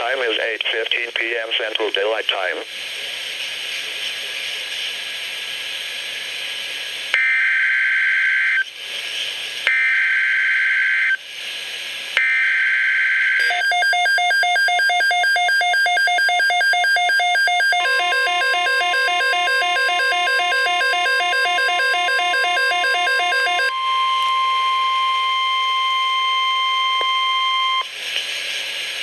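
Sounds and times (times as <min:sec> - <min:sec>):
radio static: 0:00.0 - 0:02.7
pulsing electronic alarm tone: 0:13.4 - 0:25.6.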